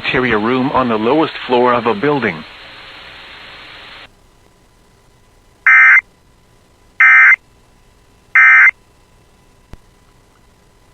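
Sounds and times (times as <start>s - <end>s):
digital data tone bursts: 5.7s - 6.0s, 7.0s - 7.4s, 8.4s - 8.7s.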